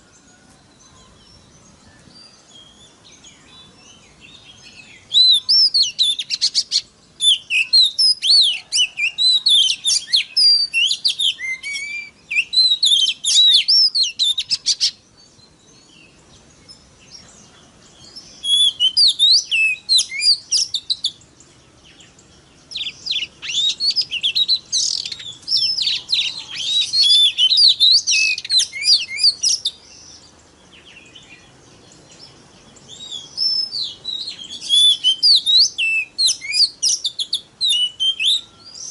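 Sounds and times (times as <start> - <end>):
bird singing varied whistles: 4.6 - 15.0, 18.0 - 21.2, 22.7 - 30.2, 32.9 - 38.9.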